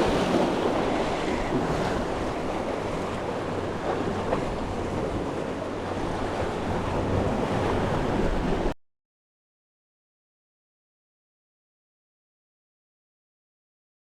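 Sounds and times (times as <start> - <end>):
sea surf washing onto shore: 0.0 - 8.7
wind rumbling on microphone: 0.0 - 8.7.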